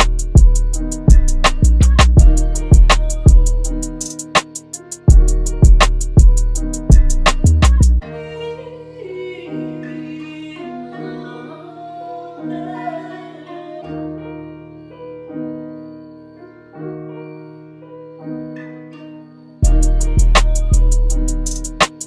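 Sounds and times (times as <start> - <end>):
heavy beat: 0.0 - 8.0, 19.6 - 22.0
held chords: 0.0 - 14.5, 18.5 - 22.0.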